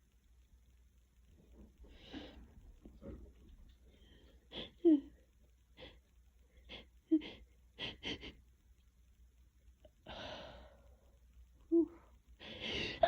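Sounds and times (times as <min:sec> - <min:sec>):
woman wheezy breaths: 0:10.0 - 0:10.9, 0:12.4 - 0:13.0.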